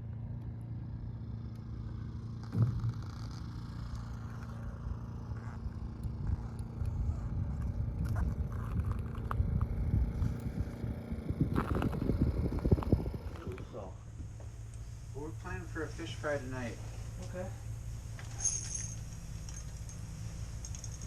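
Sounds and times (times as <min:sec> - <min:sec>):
ice auger motor drilling: 0:01.5 - 0:13.7.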